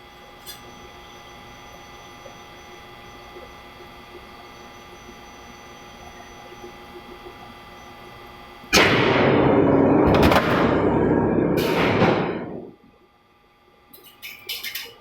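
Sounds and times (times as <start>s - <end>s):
steady machine hum: 0.0s - 13.9s
press machine noise burst: 8.8s - 12.7s
sharp machine knocks: 8.8s - 12.7s.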